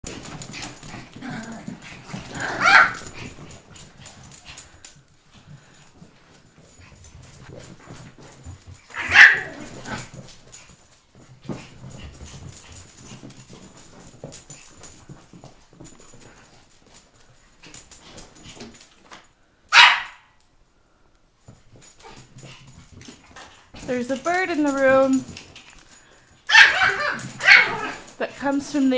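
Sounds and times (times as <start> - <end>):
dog barking sharply: 19.7 - 20.2, 26.5 - 27.9.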